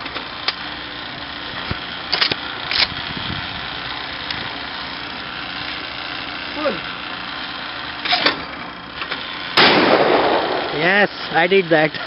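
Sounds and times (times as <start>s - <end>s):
steady background hum: 0.0s - 12.0s
shotgun bangs: 9.6s - 10.8s.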